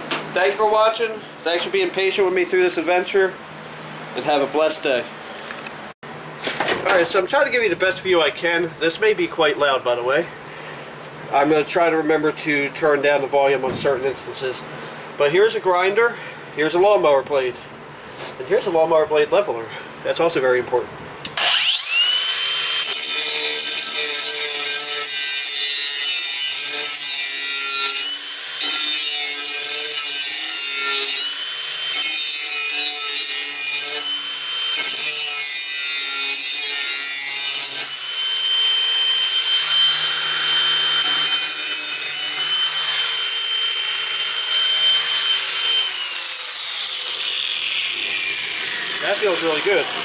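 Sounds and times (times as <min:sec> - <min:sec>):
angle grinder grinding metal: 0:21.4 - 0:50.0.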